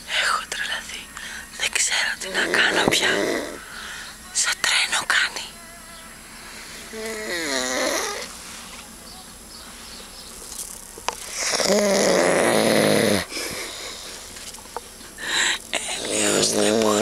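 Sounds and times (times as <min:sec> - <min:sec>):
man breathing quietly: 0:01.0 - 0:01.6, 0:03.6 - 0:04.3, 0:06.2 - 0:07.3, 0:13.2 - 0:15.9
man snoring loudly: 0:02.3 - 0:03.8, 0:06.5 - 0:08.3, 0:11.3 - 0:14.0, 0:15.2 - 0:17.0.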